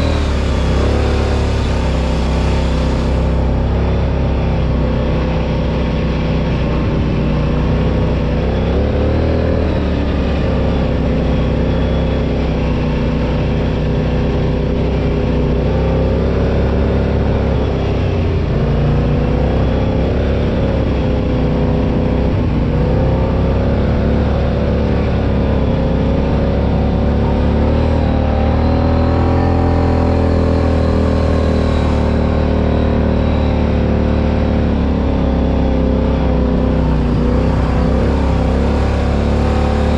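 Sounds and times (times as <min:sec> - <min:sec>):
off-road vehicle engine revving: 0:00.0 - 0:39.9.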